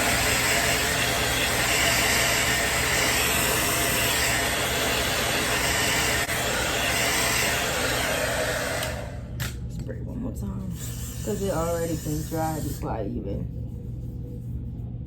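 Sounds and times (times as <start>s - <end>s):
blow dryer whooshing: 0.0s - 9.6s, 10.7s - 12.9s.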